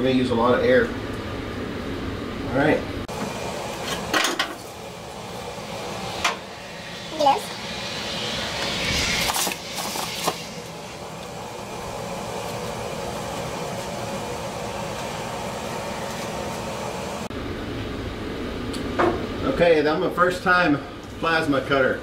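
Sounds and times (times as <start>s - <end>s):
air and machine running noise: 0.0s - 22.0s
compressed air hissing: 3.2s - 17.3s.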